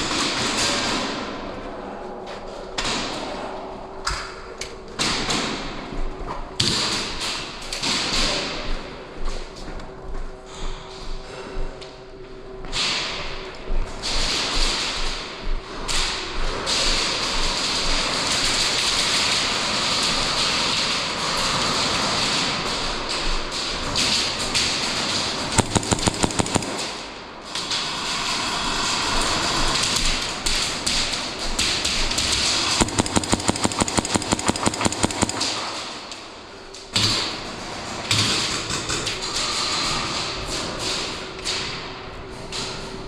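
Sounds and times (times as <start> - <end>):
airsoft guns firing bursts: 25.4 - 27.2, 32.1 - 36.2
steady rushing noise: 25.6 - 27.4.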